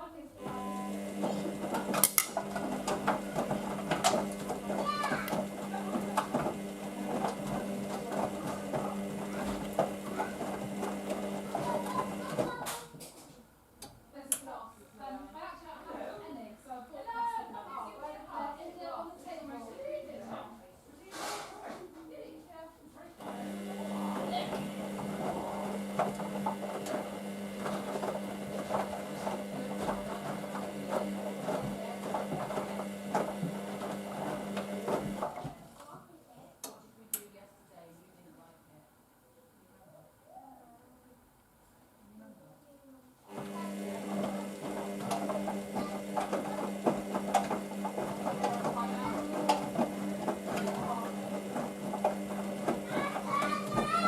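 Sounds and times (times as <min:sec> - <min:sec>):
washing machine motor hum: 0:00.3 - 0:12.6, 0:23.2 - 0:35.7, 0:43.3 - 0:54.0
wet laundry tumbling: 0:00.9 - 0:12.6, 0:23.2 - 0:35.7, 0:43.3 - 0:54.0.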